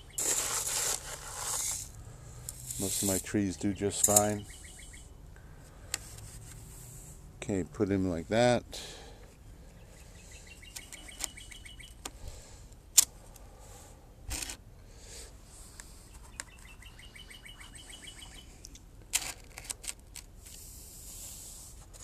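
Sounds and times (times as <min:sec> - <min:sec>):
songbird trilling: 0:03.7 - 0:05.2, 0:09.8 - 0:12.0, 0:16.3 - 0:18.5
sharp clicks and rustles: 0:18.6 - 0:20.7.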